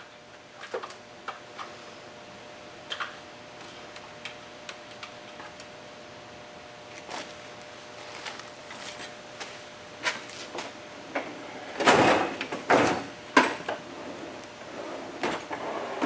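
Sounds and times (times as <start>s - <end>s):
scraping sliding sounds: 13.9s - 16.0s.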